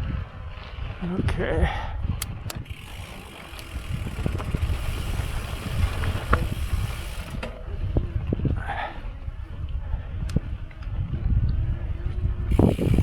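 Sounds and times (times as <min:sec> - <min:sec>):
bike clicks and rattles: 0:00.0 - 0:13.0
wind on microphone: 0:00.0 - 0:13.0
tyres ploughing through sand: 0:02.2 - 0:09.0.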